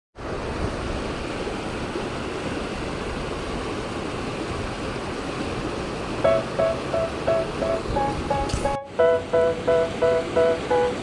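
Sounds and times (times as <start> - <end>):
river water rushing: 0.2 - 11.0
repeated musical notes: 6.2 - 11.0.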